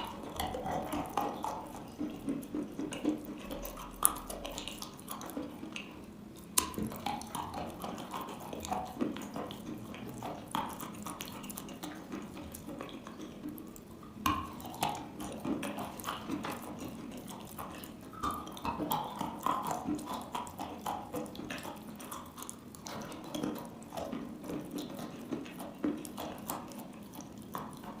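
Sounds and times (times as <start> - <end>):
wet crunching chewing: 0.0 - 28.0.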